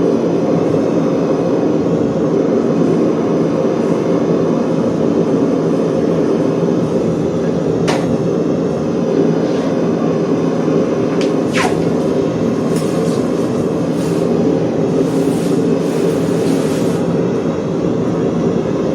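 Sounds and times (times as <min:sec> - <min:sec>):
workshop machinery humming: 0:00.0 - 0:18.9.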